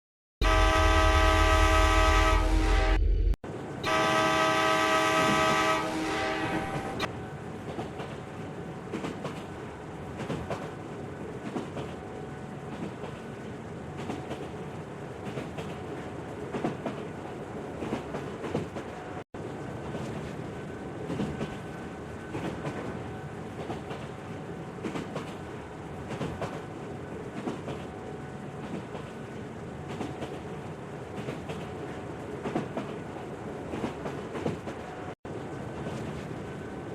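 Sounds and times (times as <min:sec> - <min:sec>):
train horn: 0:00.4 - 0:03.2, 0:03.8 - 0:07.1
train wheels clickety-clack: 0:06.7 - 0:36.9.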